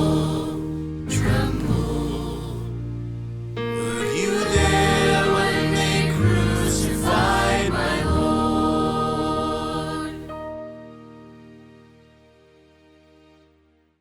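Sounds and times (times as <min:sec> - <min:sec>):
choir singing a gospel hymn: 0:00.0 - 0:10.8.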